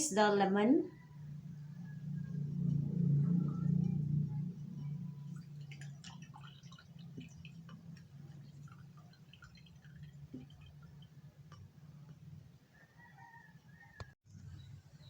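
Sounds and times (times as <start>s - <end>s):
juice dripping into glass: 4.8s - 12.2s.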